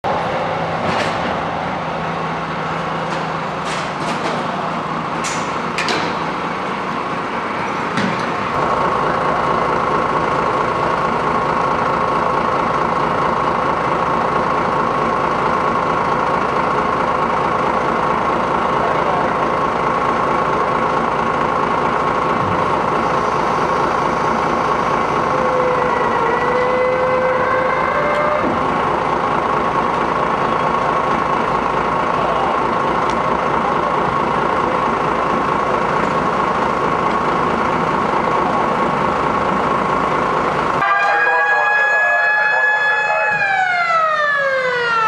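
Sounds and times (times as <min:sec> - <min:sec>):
engine and street noise: 0:00.0 - 0:45.0
emergency vehicle siren: 0:22.1 - 0:31.3, 0:40.5 - 0:45.0
fire alarm ringing: 0:40.8 - 0:45.0.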